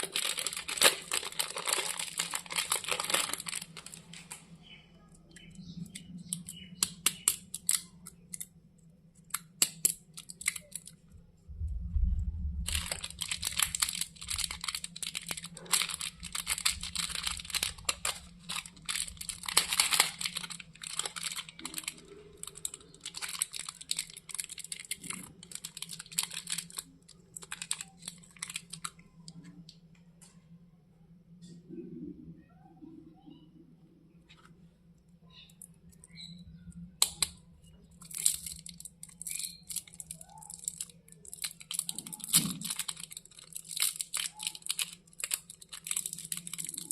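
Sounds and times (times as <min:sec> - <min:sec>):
wrappers crinkling: 0:00.0 - 0:04.4, 0:12.6 - 0:29.0, 0:37.9 - 0:46.9
low rumble: 0:11.1 - 0:14.5.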